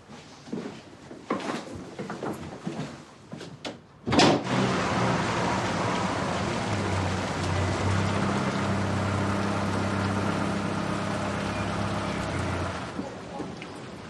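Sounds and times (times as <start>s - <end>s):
road noise: 4.4s - 14.0s
car engine hum: 4.5s - 13.2s.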